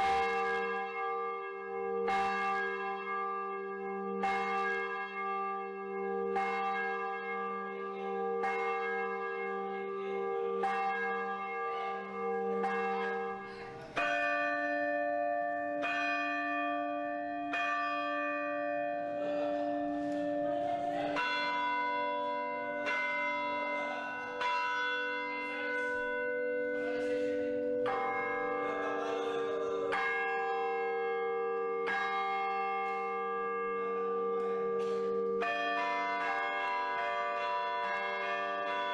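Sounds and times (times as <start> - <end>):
church bells ringing: 0.0 - 38.9.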